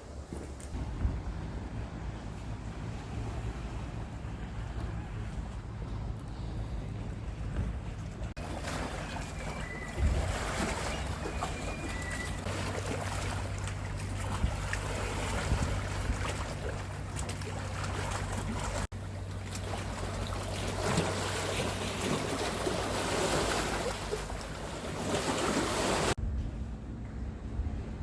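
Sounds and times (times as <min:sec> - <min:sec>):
wind noise: 0:00.0 - 0:08.3, 0:09.0 - 0:12.5, 0:14.1 - 0:17.3
boat engine humming: 0:00.0 - 0:28.0
water wash: 0:07.9 - 0:26.2.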